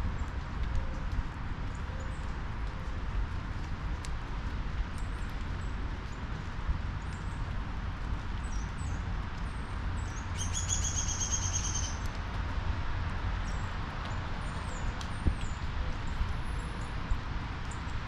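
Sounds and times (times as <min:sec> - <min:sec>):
songbirds chirping: 0:08.3 - 0:12.2.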